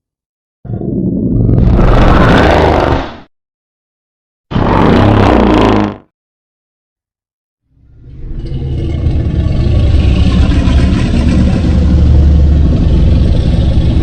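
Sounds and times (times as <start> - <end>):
deep loud rumbling: 0.9 - 3.0, 7.8 - 14.0.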